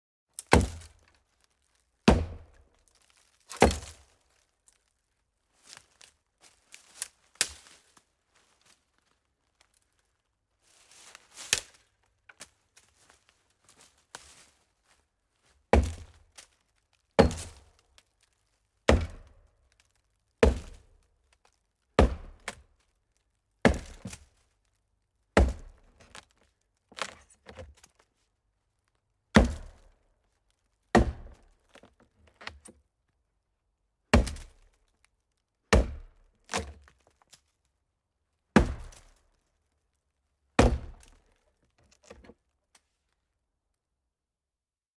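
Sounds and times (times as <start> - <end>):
axe chopping hollow tree trunk: 0.4 - 1.0, 2.1 - 2.6, 3.5 - 4.0, 15.7 - 16.2, 17.2 - 17.7, 18.9 - 19.4, 20.4 - 20.9, 22.0 - 22.6, 23.6 - 24.2, 25.4 - 26.2, 29.4 - 30.0, 30.9 - 31.8, 34.1 - 34.7, 35.7 - 36.9, 38.6 - 39.2, 40.6 - 41.2.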